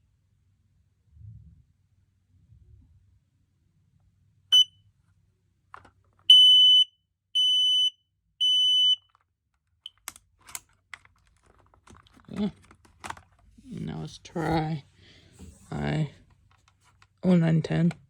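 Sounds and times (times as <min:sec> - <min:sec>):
smoke alarm beeping: 0:04.5 - 0:04.7, 0:06.3 - 0:09.1
smoke alarm chirp: 0:06.3 - 0:09.0
faint handling clicks: 0:09.1 - 0:13.5.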